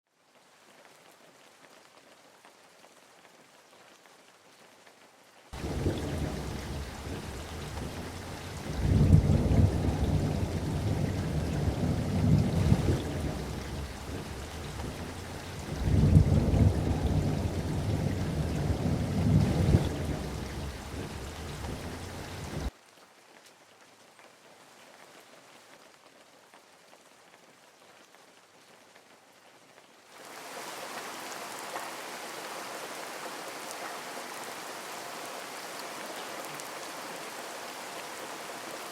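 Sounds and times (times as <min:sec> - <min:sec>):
rain: 0:00.1 - 0:38.9
deep rumble: 0:05.6 - 0:22.7.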